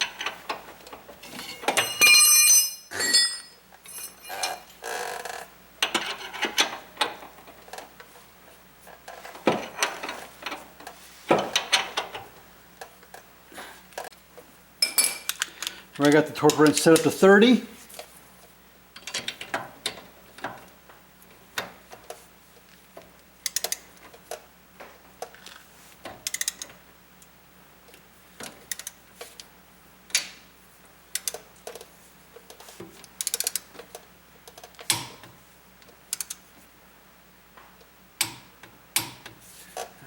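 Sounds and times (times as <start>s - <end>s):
torque wrench ratcheting clicks: 36.1s - 36.4s.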